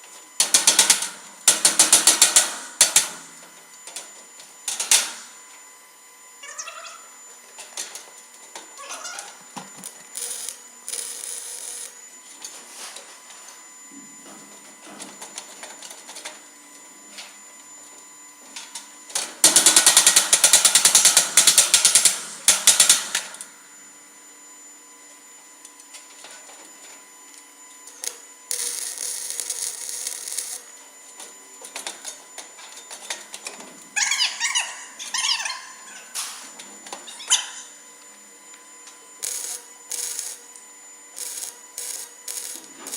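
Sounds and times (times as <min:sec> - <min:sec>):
welder crackling buzz: 0:00.4 - 0:05.4, 0:07.8 - 0:13.0, 0:19.1 - 0:23.5, 0:27.3 - 0:32.6, 0:38.5 - 0:42.9.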